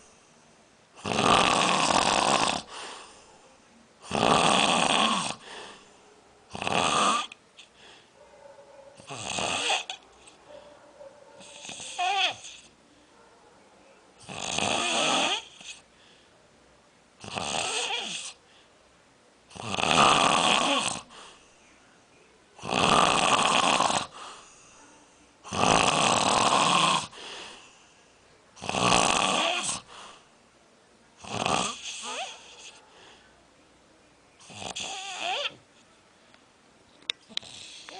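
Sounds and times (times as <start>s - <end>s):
person snoring: 1.0s - 2.8s, 4.0s - 5.5s, 6.6s - 7.3s, 9.1s - 10.0s, 14.2s - 15.8s, 17.2s - 18.4s, 19.6s - 21.1s, 22.6s - 24.2s, 25.5s - 27.2s, 28.6s - 29.9s, 31.2s - 32.3s, 34.4s - 35.6s, 37.4s - 37.9s.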